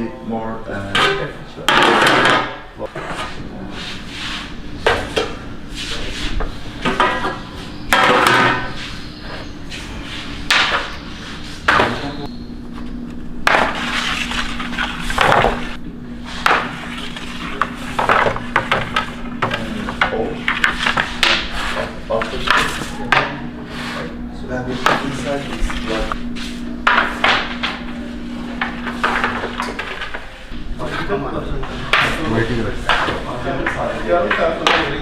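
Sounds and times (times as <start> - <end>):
steady low hum: 0.0 - 35.0
trays and utensils clattering: 0.8 - 3.4, 6.8 - 8.9, 16.4 - 26.2, 26.9 - 35.0.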